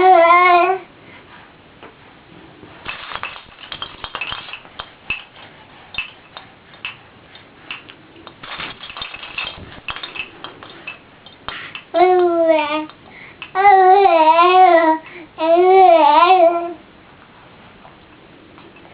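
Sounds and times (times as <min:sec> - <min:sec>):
baby toy rattles clicking and clinking: 0:02.9 - 0:07.0, 0:07.7 - 0:13.6.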